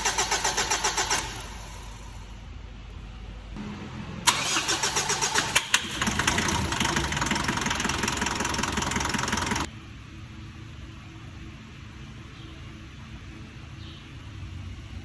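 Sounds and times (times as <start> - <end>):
diesel engine cranking and knocking: 0.0 - 2.2, 4.2 - 9.7.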